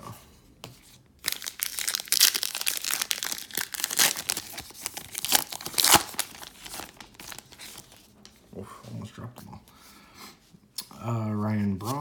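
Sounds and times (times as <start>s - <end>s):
plastic wrapper tearing and crinkling: 1.2s - 8.4s.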